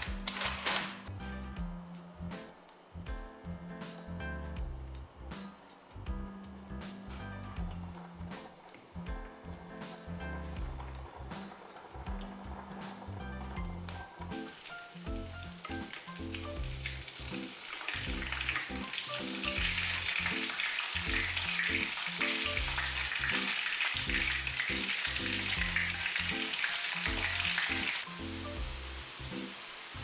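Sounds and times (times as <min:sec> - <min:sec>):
soft background music: 0:00.0 - 0:30.0
food sizzling in hot oil: 0:06.8 - 0:30.0.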